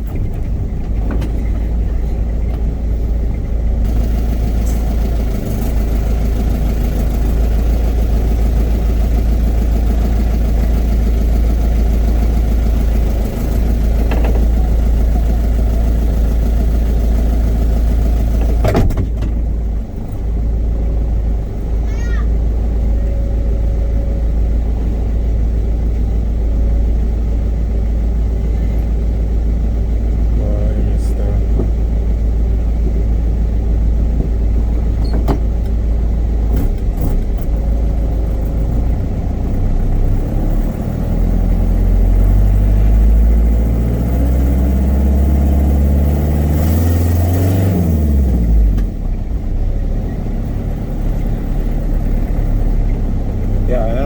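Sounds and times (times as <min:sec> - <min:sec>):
truck engine rumbling: 0:00.0 - 0:54.0.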